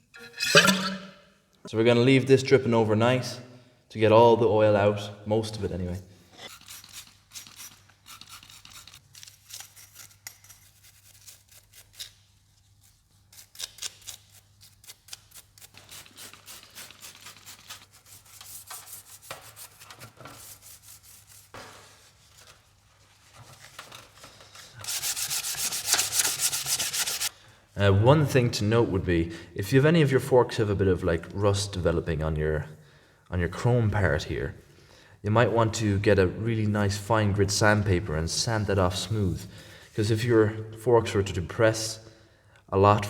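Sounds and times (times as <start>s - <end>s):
sandpaper rubbing on metal: 15.4s - 21.6s, 24.8s - 27.3s.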